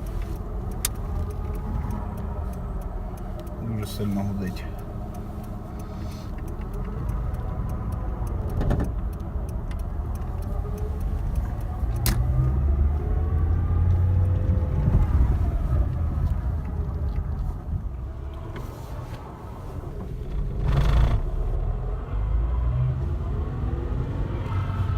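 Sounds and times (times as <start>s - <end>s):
sharp clicks: 0.0s - 12.5s
car engine: 0.0s - 24.9s.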